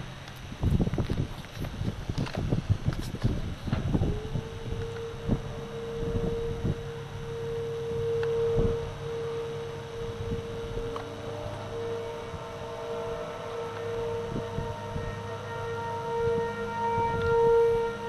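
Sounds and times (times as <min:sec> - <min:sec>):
warning siren steady tone: 0:00.0 - 0:18.0
faint siren winding up: 0:03.9 - 0:18.0.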